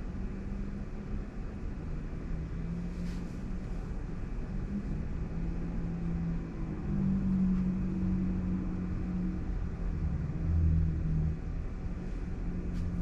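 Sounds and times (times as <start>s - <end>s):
low rumble and hum in car cabin: 0.0s - 13.0s.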